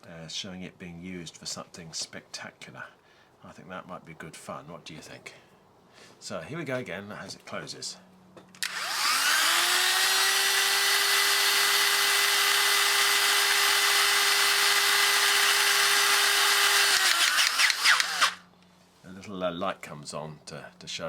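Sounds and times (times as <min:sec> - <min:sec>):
crimping tool motor whining: 0:08.6 - 0:18.4.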